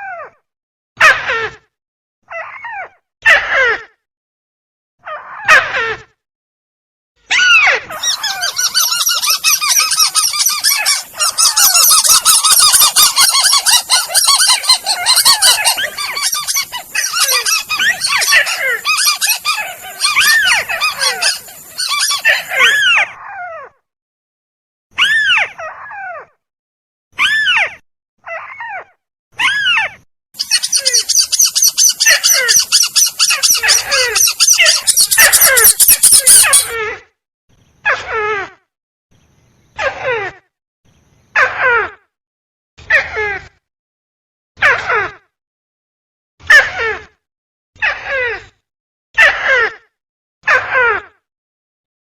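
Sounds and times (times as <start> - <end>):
crake calls: 7.9 - 22.8, 30.4 - 36.8.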